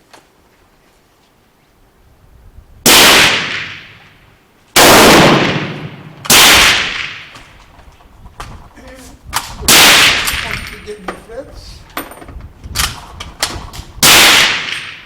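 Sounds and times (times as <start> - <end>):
rifle shots with echo: 2.9 - 4.0, 4.8 - 7.4, 9.7 - 10.7, 14.0 - 15.0.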